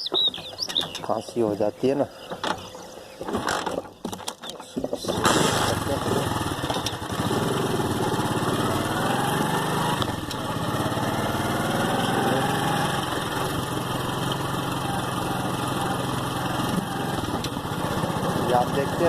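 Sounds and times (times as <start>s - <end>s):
small motorcycle engine running: 5.0s - 19.0s.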